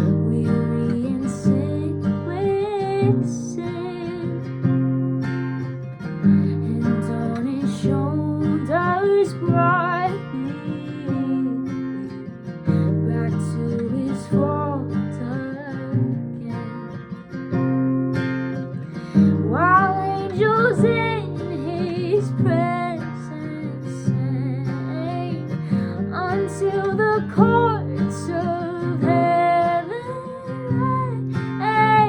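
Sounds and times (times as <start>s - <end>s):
strummed acoustic guitar: 0.0s - 32.0s.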